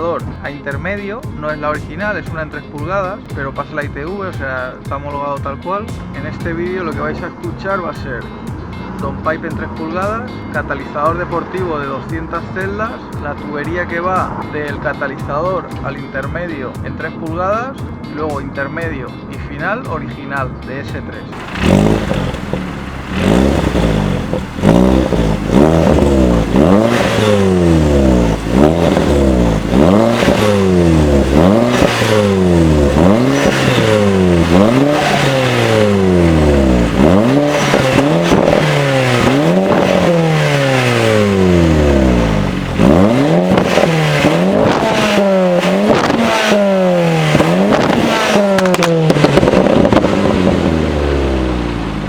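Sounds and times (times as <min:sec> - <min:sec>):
car engine revving: 0:06.0 - 0:15.8, 0:21.3 - 0:52.0.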